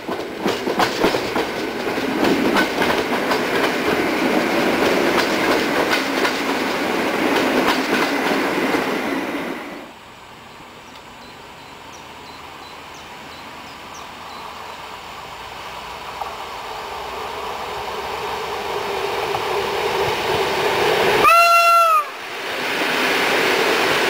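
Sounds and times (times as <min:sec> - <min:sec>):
train running noise: 0:00.0 - 0:24.0
locomotive horn blast: 0:21.2 - 0:22.2.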